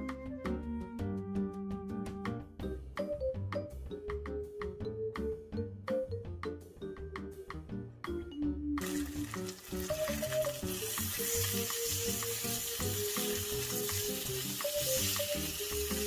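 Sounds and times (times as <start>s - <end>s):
background music: 0.0s - 16.0s
chicken sizzling in a pan: 8.8s - 16.0s.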